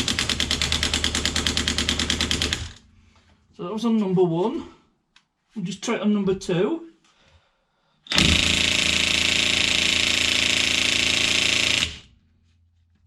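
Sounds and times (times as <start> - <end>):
impact wrench hammering on bolt: 0.0 - 2.8, 8.1 - 12.1.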